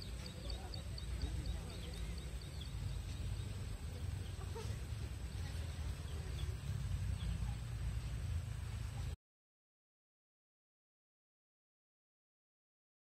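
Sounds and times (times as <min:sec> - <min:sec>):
birds chirping faintly: 0:00.0 - 0:09.2
steady low rumble: 0:00.0 - 0:09.2.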